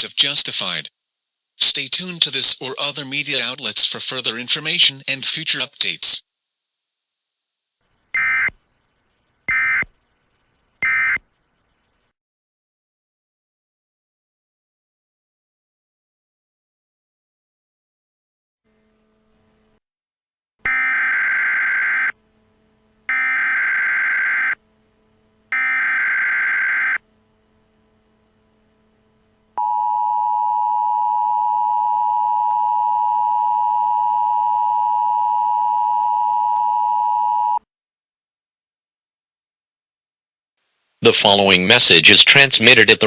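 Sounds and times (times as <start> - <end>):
buzzing data bursts: 7.9 - 12.1, 23.1 - 24.6, 25.4 - 27.1.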